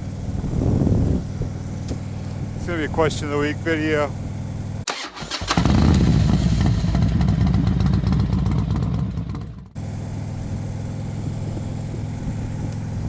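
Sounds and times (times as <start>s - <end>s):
motorcycle engine revving: 4.9s - 10.4s.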